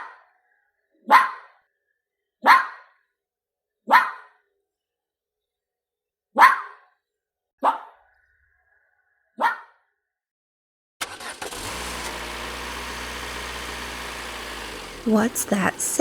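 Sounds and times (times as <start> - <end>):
dog barking: 1.1 - 1.5, 2.4 - 2.9, 3.9 - 4.4, 6.4 - 6.8, 9.4 - 9.7
car engine running: 11.0 - 16.0.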